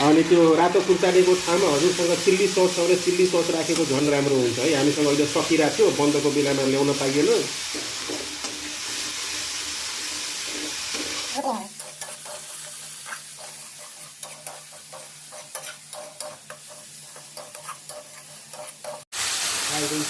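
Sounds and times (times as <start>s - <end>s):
sauce sizzling in a pan: 0.0s - 20.0s
spatula scraping a pan: 4.8s - 19.1s.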